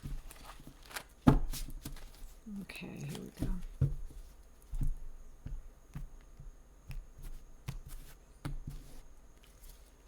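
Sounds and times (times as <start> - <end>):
cards being shuffled: 0.0 - 2.2.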